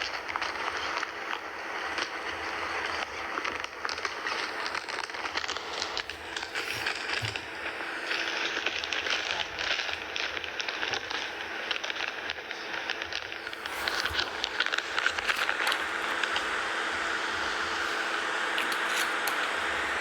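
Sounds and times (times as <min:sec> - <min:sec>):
steady hiss: 0:00.0 - 0:20.0
plastic packaging crinkling: 0:04.3 - 0:11.2, 0:12.9 - 0:20.0.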